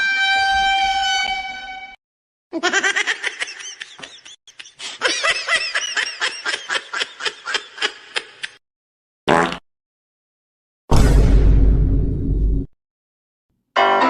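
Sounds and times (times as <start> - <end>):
snickering laugh: 2.6 - 8.6.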